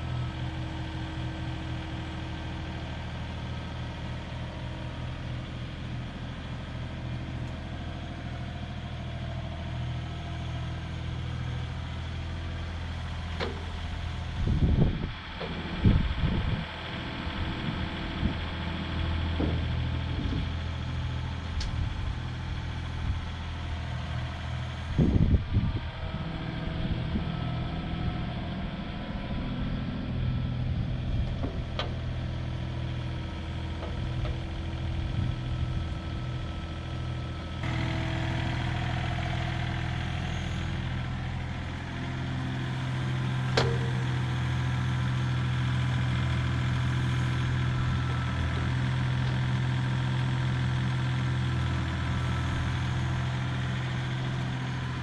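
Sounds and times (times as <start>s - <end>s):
engine idling: 0.0s - 55.0s
loud clunk: 43.5s - 44.3s.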